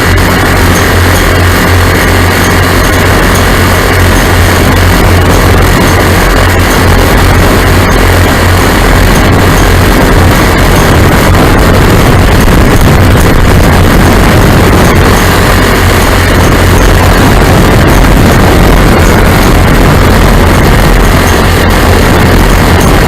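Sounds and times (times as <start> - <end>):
small aircraft engines running: 0.0 - 23.0
wind rush on microphone: 0.0 - 23.0.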